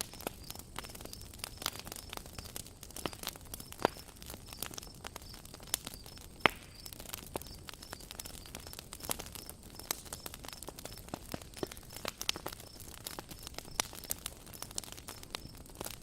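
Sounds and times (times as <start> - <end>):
campfire wood crackling and popping: 0.0 - 16.0
faint high chirping: 0.1 - 11.1.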